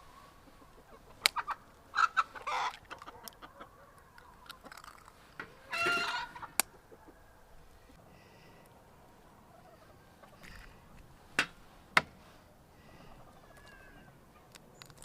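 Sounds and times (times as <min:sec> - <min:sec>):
chickens clucking: 0:00.0 - 0:08.0, 0:08.9 - 0:11.2
sharp clicks: 0:14.5 - 0:15.0.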